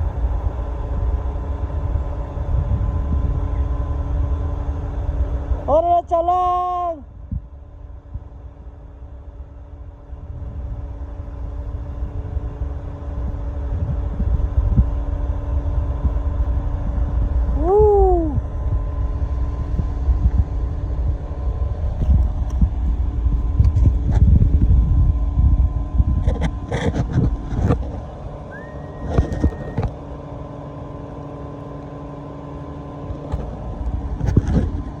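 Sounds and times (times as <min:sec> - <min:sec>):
high whine: 0:00.0 - 0:35.0
crane engine rumbling: 0:07.8 - 0:35.0.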